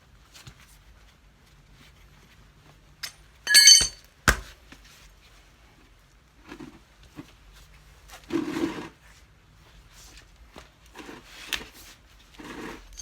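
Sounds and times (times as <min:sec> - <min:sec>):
metal clatter with ringing tone: 0:03.5 - 0:04.0.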